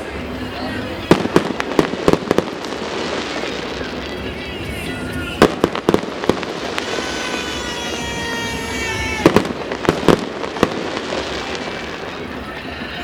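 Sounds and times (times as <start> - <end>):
firework bangs and cracks: 0.0 - 13.0
whistling firework: 0.0 - 13.0.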